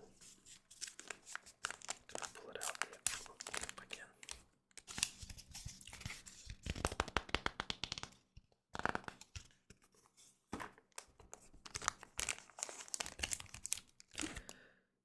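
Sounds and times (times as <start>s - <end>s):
foil wrapper crinkling and tearing: 0.6s - 7.0s, 11.7s - 14.5s.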